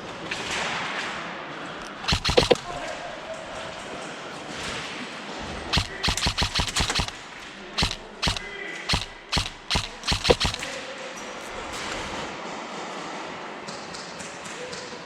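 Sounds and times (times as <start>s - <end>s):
airsoft guns firing: 1.9s - 2.8s, 5.7s - 10.8s.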